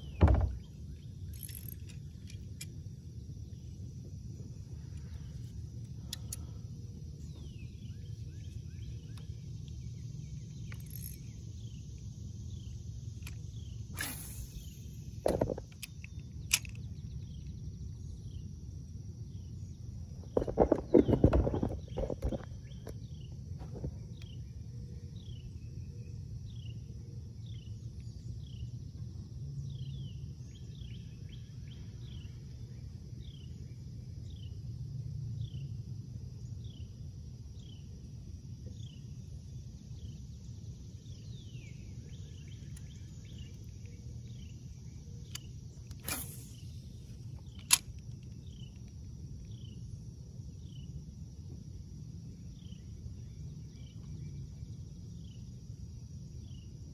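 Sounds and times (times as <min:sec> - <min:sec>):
high insect drone: 0:00.0 - 0:56.9
low steady rumble: 0:00.0 - 0:56.9
sharp clicks: 0:47.4 - 0:49.0.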